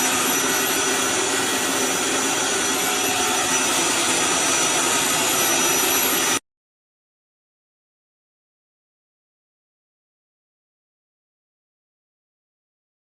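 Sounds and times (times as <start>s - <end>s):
vacuum cleaner running: 0.0s - 6.4s.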